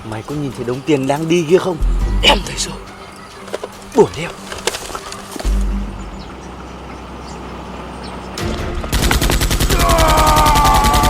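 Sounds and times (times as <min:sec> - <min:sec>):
rapid automatic gunfire: 0:08.9 - 0:11.0.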